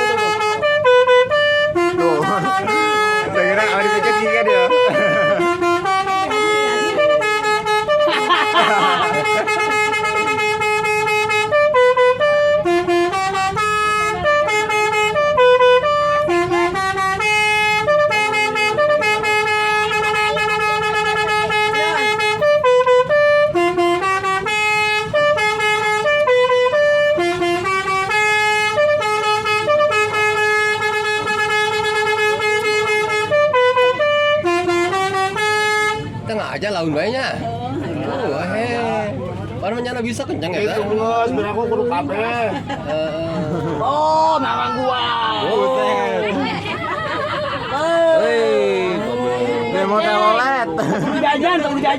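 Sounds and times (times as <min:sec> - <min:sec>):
multi-tone horn melody: 0:00.0 - 0:36.7, 0:48.3 - 0:51.9.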